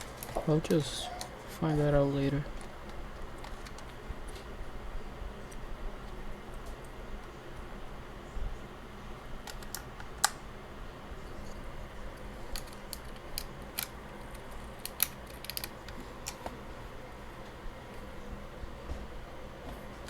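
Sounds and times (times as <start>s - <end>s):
keycaps clicking onto keyboard: 12.6s - 16.5s.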